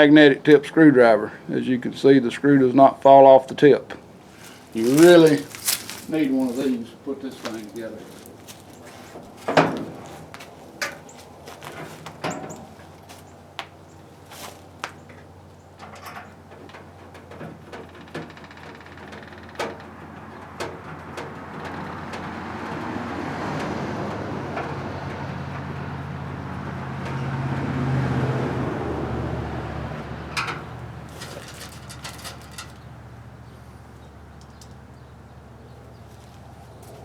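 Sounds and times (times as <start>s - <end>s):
vehicle passing by: 21.0s - 37.0s
metallic clicks and knocks: 30.3s - 33.0s.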